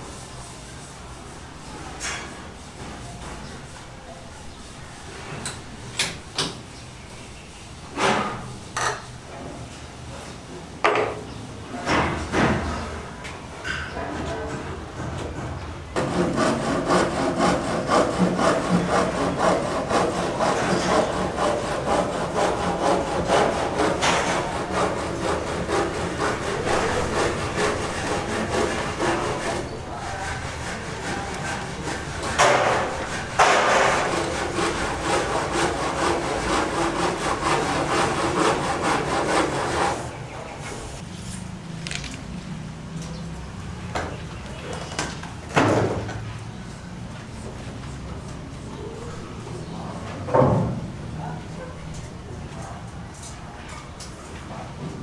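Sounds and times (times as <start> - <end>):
saw rasping through wood: 16.0 - 40.2.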